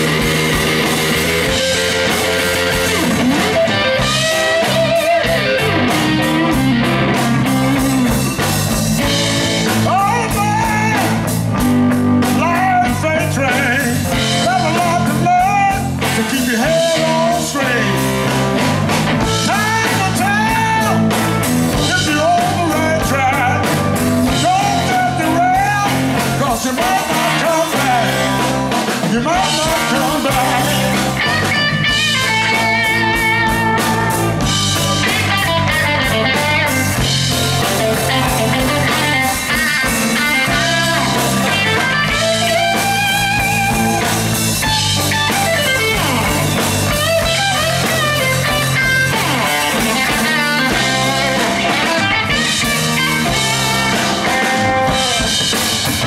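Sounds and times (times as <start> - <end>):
electric guitar solo: 0.0 - 12.8, 29.7 - 56.0
bass line: 0.0 - 56.0
drums: 0.0 - 56.0.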